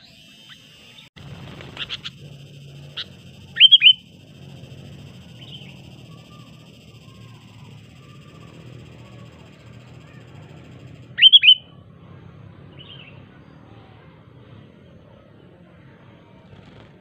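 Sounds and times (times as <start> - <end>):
bird whistled calls: 0.0 - 11.8
high background drone: 0.0 - 16.5
low hum: 0.0 - 17.0.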